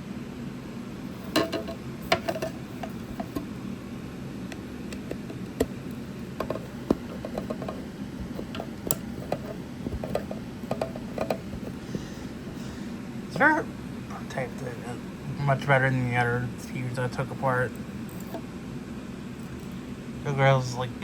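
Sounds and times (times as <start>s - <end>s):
steady low background noise: 0.0s - 21.0s
clicks and knocks of speaker parts: 1.3s - 3.5s, 4.5s - 11.8s.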